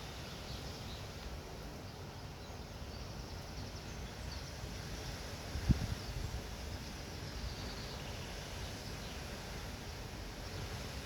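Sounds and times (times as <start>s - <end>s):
wind buffeting microphone: 4.7s - 11.0s.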